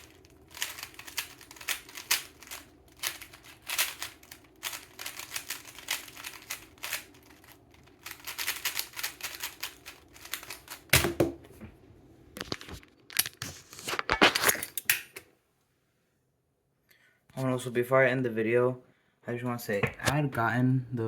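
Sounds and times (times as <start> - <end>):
speed cube clicking: 0.0 - 10.9.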